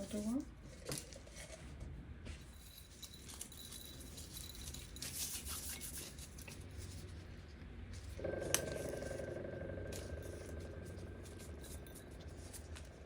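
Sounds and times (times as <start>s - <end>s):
steady hum: 8.0s - 13.0s.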